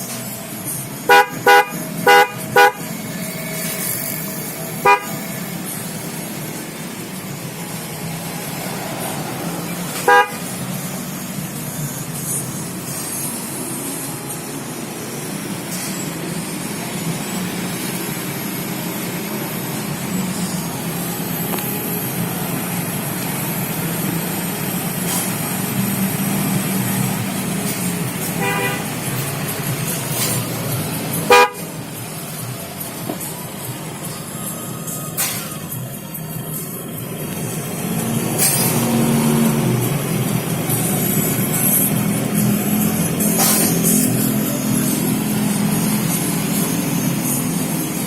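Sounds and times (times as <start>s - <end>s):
horn toot: 1.0s - 5.4s, 10.0s - 10.6s, 28.2s - 29.1s, 31.2s - 31.8s.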